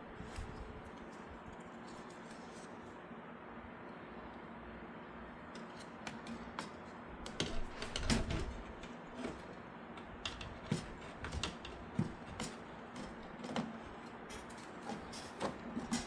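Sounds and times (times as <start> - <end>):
faint steady hum: 0.0 - 16.0
hard parts clicking and tapping: 5.5 - 16.0.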